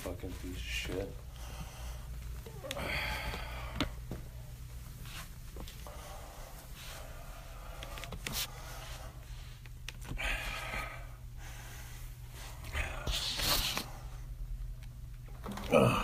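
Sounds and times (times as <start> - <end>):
steady low hum: 0.0 - 16.0
person breathing or sniffing: 10.2 - 14.1.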